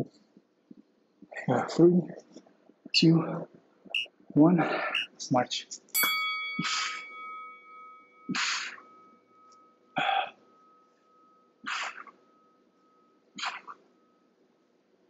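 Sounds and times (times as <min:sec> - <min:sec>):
timer ding: 0:05.0 - 0:05.2, 0:06.0 - 0:14.3.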